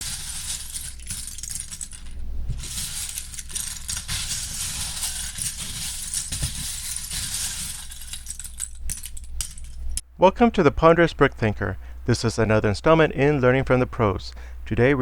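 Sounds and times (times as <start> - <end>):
plastic bricks clinking and rattling: 0.0 - 10.0
low steady hum: 0.0 - 15.0.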